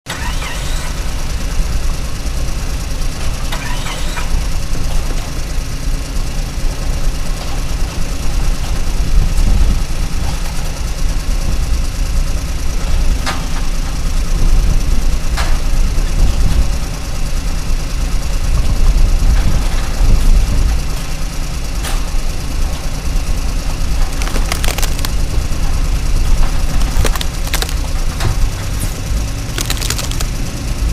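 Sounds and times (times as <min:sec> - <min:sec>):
toy excavator motor rumble: 0:24.1 - 0:25.1
sharp clicks: 0:24.1 - 0:25.2, 0:26.8 - 0:28.0, 0:29.6 - 0:30.3.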